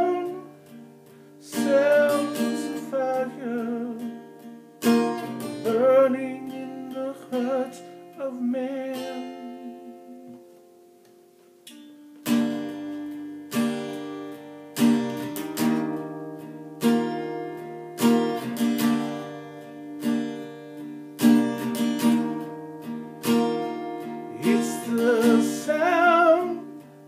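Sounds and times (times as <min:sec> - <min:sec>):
stringed instrument strumming chords: 0:12.0 - 0:27.0.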